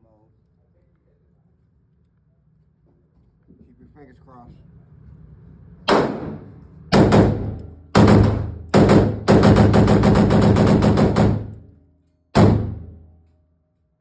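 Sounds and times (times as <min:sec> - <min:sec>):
rifle shots: 0:05.9 - 0:11.7, 0:12.4 - 0:13.0.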